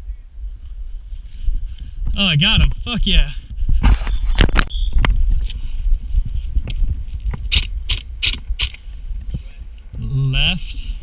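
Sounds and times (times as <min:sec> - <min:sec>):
wind rumble on microphone: 0:00.0 - 0:11.0
microphone handling noise: 0:01.4 - 0:10.1.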